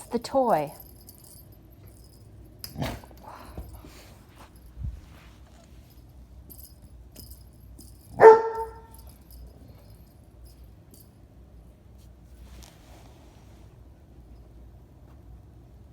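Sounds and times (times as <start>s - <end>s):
faint light jingles: 0.0s - 12.7s
dog barking: 8.2s - 8.9s.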